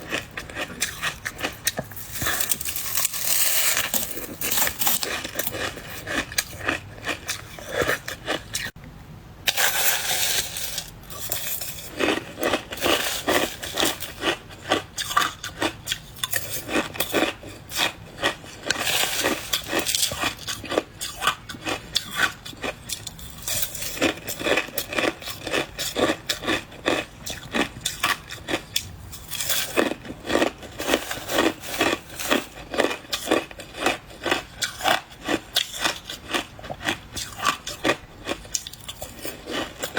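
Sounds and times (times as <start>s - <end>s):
ice being chewed: 0.0s - 8.7s, 9.5s - 39.9s.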